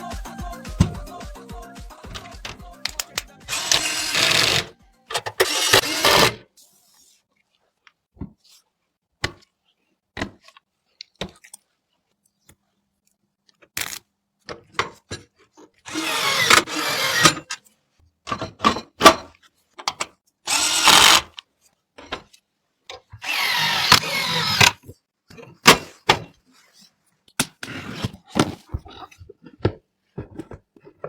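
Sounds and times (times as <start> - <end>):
parts clicking and tapping: 2.1 - 3.8
electric screwdriver whirring: 2.9 - 6.4, 15.9 - 17.5, 20.5 - 21.4, 23.2 - 24.8.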